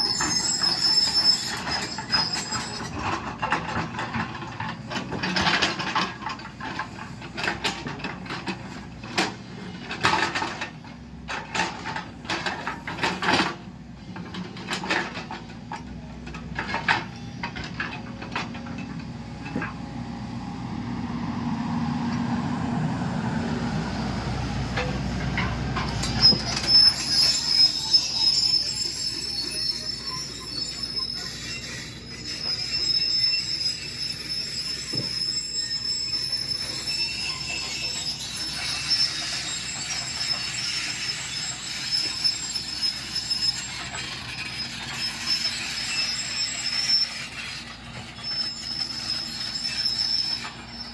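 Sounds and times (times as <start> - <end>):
steady high squeal: 0.0 - 7.6, 22.0 - 50.9
excavator engine under load: 0.0 - 50.9
metal clanks and knocks: 0.1 - 19.8, 24.7 - 32.6.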